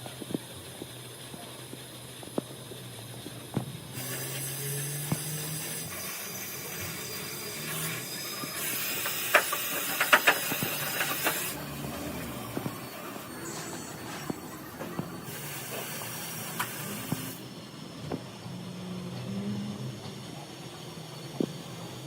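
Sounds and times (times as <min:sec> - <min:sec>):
steady hiss: 0:12.6 - 0:18.4.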